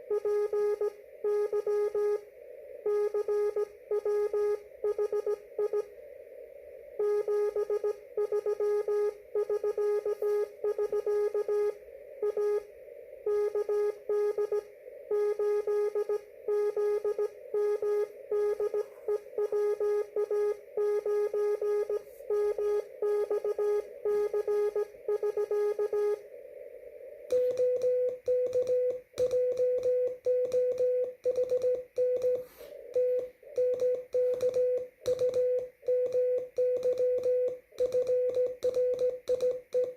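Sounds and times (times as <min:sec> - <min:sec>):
morse code tone: 0:00.0 - 0:05.9, 0:07.0 - 0:26.3, 0:27.3 - 0:39.9
receiver hiss: 0:00.0 - 0:39.9
higher-pitched morse code tone: 0:02.9 - 0:05.9, 0:07.0 - 0:12.7, 0:27.3 - 0:39.9.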